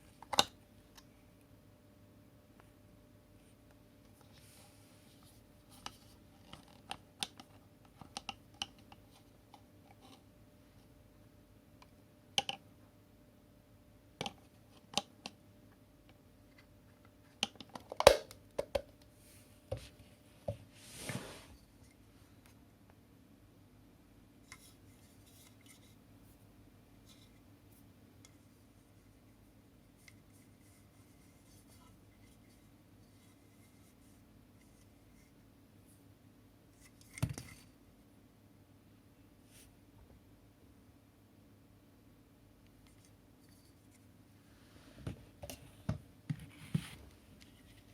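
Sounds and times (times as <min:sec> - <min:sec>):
low room hum: 0:00.0 - 0:47.9
handling noises and scraping: 0:19.1 - 0:22.6, 0:24.4 - 0:35.4, 0:42.8 - 0:47.9.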